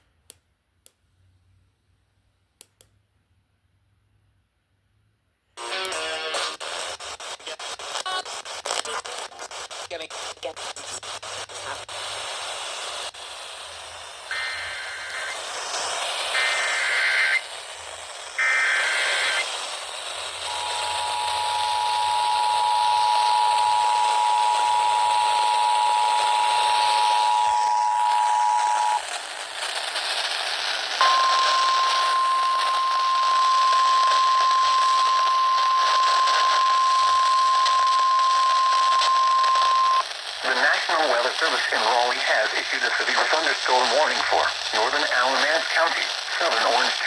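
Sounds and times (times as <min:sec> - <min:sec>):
radio hiss: 0:05.6 - 0:47.0
steady warning tone: 0:20.4 - 0:29.0, 0:31.0 - 0:40.0
two-tone attention signal: 0:20.5 - 0:29.0, 0:31.0 - 0:40.0.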